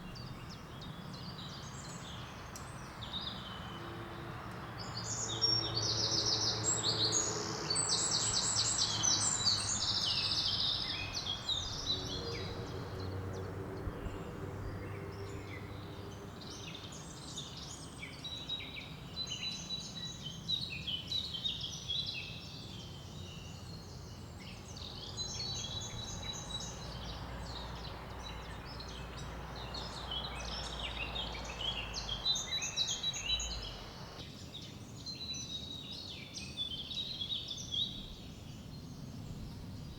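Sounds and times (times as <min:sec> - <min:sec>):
small birds chirping and singing: 0:00.0 - 0:39.9.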